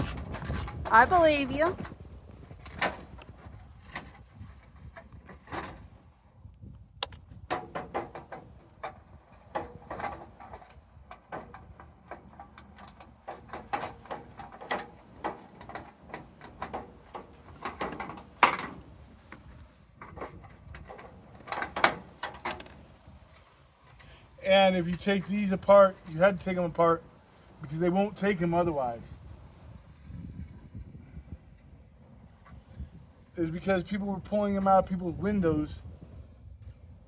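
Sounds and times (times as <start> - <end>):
metal clicks and clanks: 0.0 - 6.0, 7.0 - 24.1.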